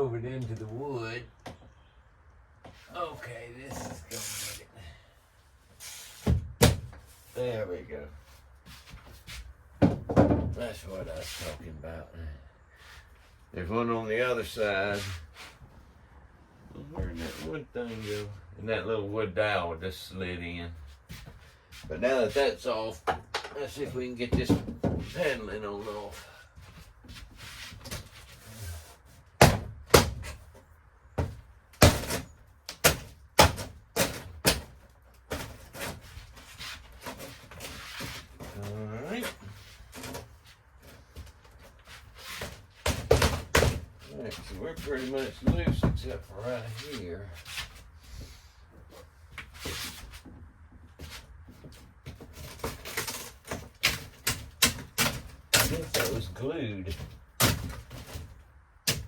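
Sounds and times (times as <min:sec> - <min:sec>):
wall paneling crackling and creaking: 0:00.0 - 0:59.0
paneling thuds and whacks: 0:06.2 - 0:07.1, 0:29.4 - 0:30.6, 0:31.2 - 0:36.2, 0:42.1 - 0:46.2, 0:56.9 - 0:59.0
paneling snapping loose: 0:31.8 - 0:36.0, 0:52.4 - 0:56.3, 0:57.3 - 0:59.0.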